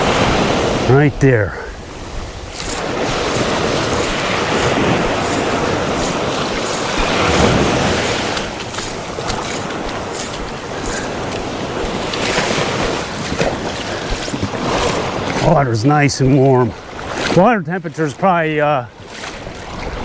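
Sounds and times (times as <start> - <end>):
waves washing: 0.0 - 20.0
splashing footsteps in surf: 2.5 - 15.6, 19.0 - 20.0.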